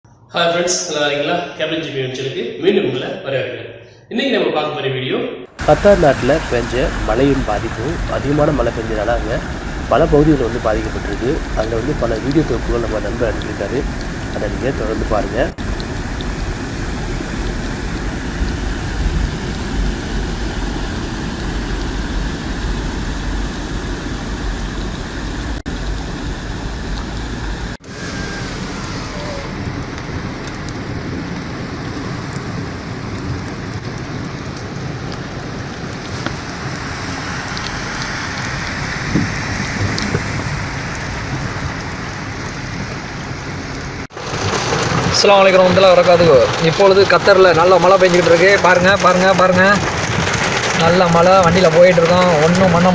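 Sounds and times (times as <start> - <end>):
heavy rain pouring: 5.6 - 52.9.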